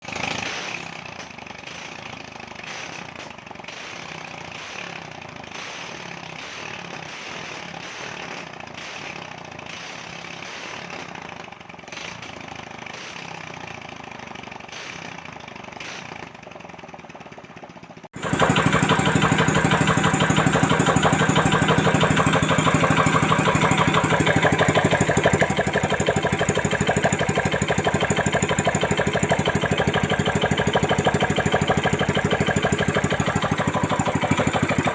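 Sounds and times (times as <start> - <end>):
boat engine running fast: 18.2 - 34.9.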